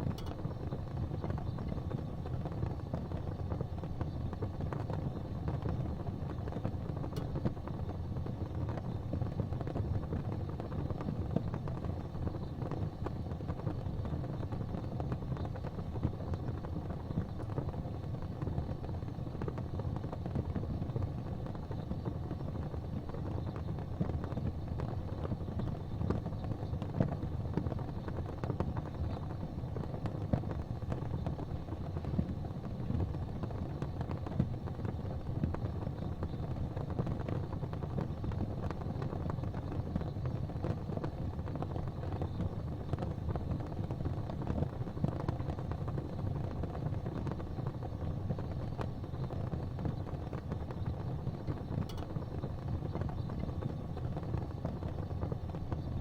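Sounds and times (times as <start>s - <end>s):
faint ticks: 0.0s - 1.8s
gas fireplace flames rumbling: 0.0s - 56.0s.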